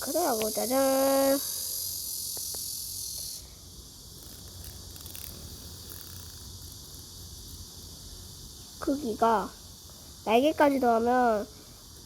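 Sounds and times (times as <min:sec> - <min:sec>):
cicadas buzzing: 0:00.0 - 0:12.0.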